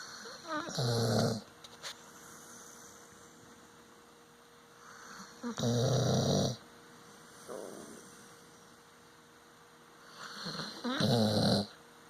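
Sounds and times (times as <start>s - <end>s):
dog snoring: 0.0s - 1.5s, 4.8s - 6.6s, 10.1s - 11.8s
faint electrical hum: 0.0s - 12.0s.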